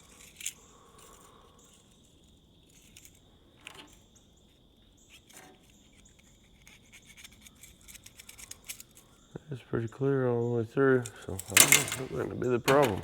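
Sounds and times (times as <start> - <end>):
faint clicks of small metal parts: 0.0 - 9.3, 11.0 - 13.0.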